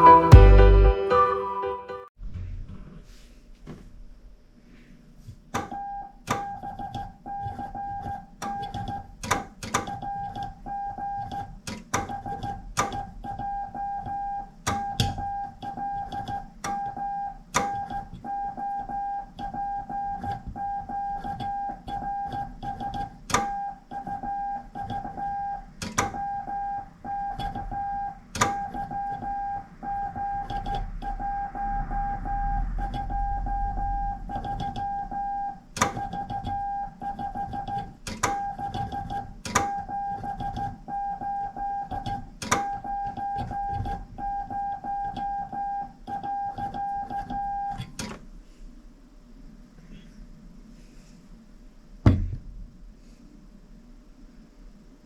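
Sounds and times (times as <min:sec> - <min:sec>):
morse code beeps: 0:12.1 - 0:47.8.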